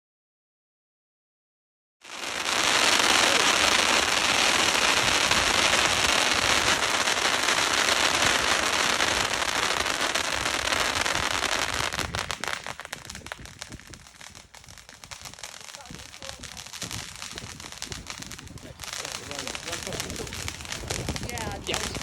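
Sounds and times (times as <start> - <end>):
firework fountain hissing and crackling: 2.0 - 22.0.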